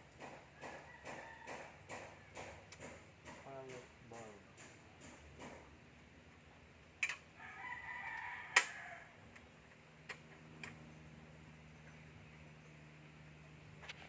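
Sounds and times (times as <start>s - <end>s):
rooster crowing: 0.6s - 2.4s, 7.4s - 9.2s.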